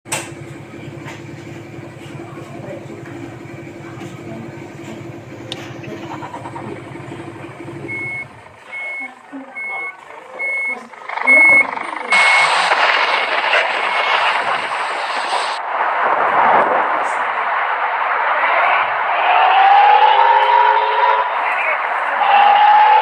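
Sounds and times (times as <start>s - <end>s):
truck engine idling: 0.1s - 15.6s
reversing alarm beeping: 7.2s - 14.9s.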